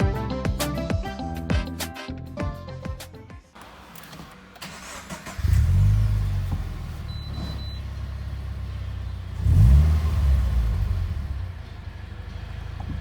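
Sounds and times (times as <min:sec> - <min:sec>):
car engine idling and revving: 0:03.6 - 0:13.0.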